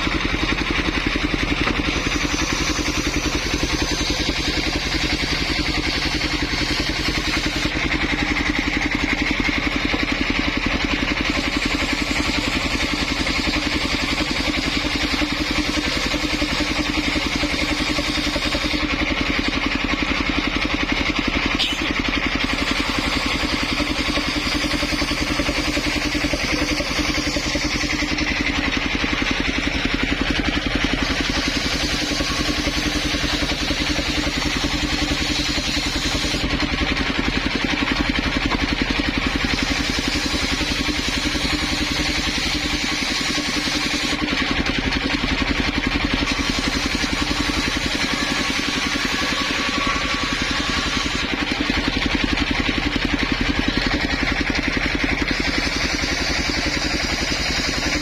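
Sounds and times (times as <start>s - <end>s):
circular saw engine running: 0.0s - 58.0s
saw hiss: 1.7s - 7.7s, 11.2s - 18.9s, 21.6s - 28.2s, 30.9s - 36.5s, 39.4s - 44.2s, 46.1s - 51.4s.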